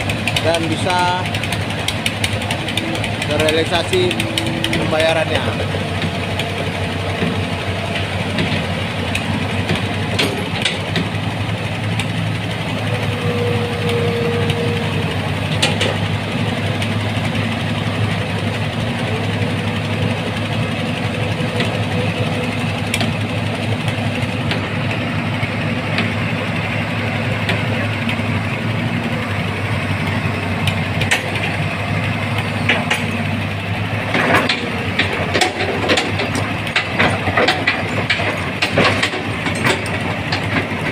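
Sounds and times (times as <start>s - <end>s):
knocks and clicks: 0.0s - 13.2s, 14.2s - 16.9s, 21.4s - 25.0s, 30.6s - 31.6s, 32.4s - 33.4s, 34.0s - 40.9s
excavator diesel engine running: 0.0s - 40.9s.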